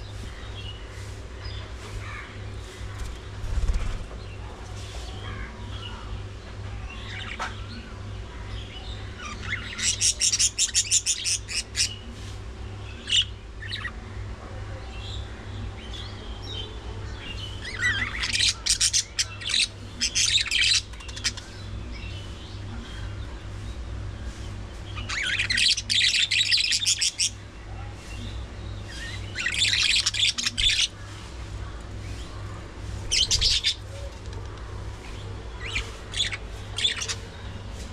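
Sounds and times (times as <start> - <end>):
budgerigars chattering: 9.0 - 12.1, 17.3 - 23.2, 25.0 - 27.4, 28.0 - 31.3, 32.0 - 34.3, 35.0 - 37.8.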